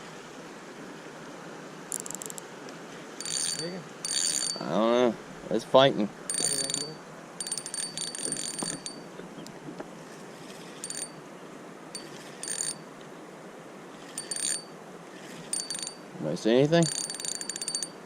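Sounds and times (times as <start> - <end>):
fishing reel ratcheting: 1.9 - 2.4, 3.2 - 4.7, 6.3 - 9.0, 10.4 - 11.2, 12.0 - 12.8, 14.0 - 16.0, 16.8 - 18.0.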